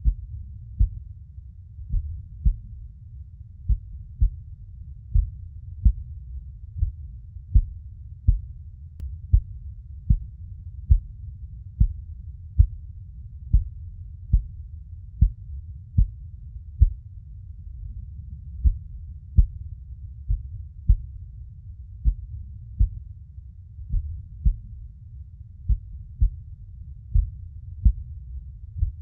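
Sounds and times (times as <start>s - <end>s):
heartbeat thumps: 0.0s - 1.1s, 1.8s - 2.8s, 3.6s - 8.6s, 9.2s - 12.8s, 13.4s - 14.6s, 15.2s - 16.2s, 16.8s - 17.0s, 18.5s - 21.3s, 22.0s - 23.1s, 23.8s - 24.8s, 25.7s - 26.5s, 27.1s - 29.0s
steady low background noise: 0.0s - 29.0s.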